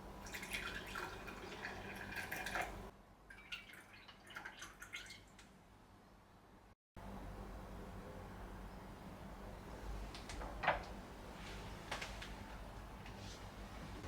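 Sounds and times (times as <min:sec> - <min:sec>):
liquid dripping and trickling: 0:00.2 - 0:05.6.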